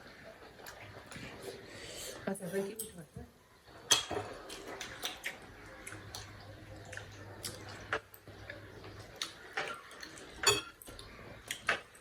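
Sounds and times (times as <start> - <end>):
faint low hum: 0.0 - 12.0
plates and utensils clicking: 3.9 - 5.3, 9.5 - 11.9.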